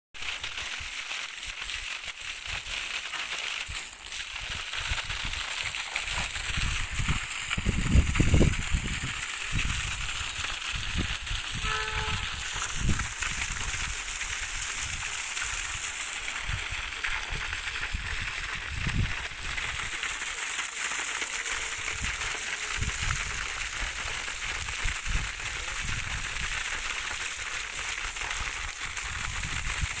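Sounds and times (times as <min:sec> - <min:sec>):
water rushing from pump outlet: 0:00.2 - 0:30.0
short pitched sound: 0:11.6 - 0:13.0.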